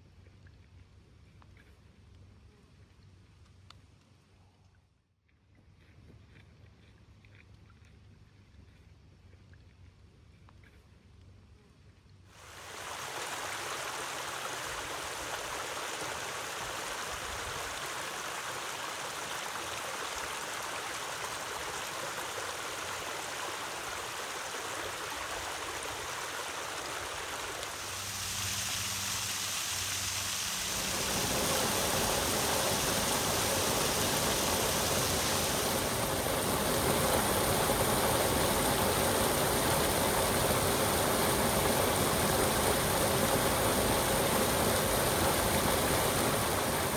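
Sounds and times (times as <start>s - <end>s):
stream water rushing and gurgling: 12.4s - 46.9s.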